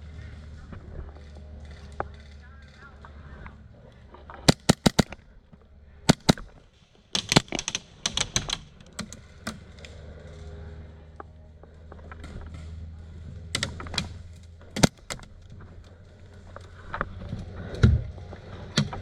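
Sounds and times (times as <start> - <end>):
airsoft guns firing: 4.5 - 5.2, 6.1 - 6.5, 14.8 - 15.3.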